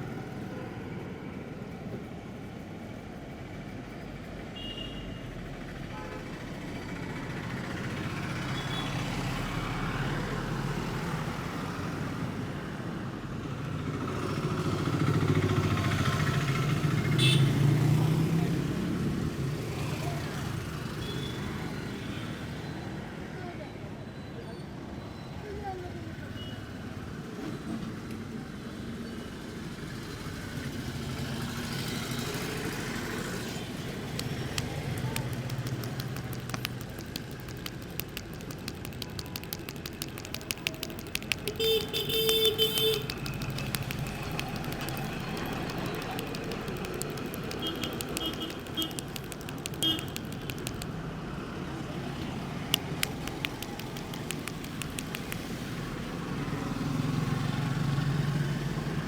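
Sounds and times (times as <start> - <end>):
street traffic: 0.0 - 59.0
vehicle horn: 17.2 - 17.5, 41.6 - 43.1, 49.8 - 50.1
rapid tapping of head massage: 34.1 - 50.9, 52.7 - 55.6.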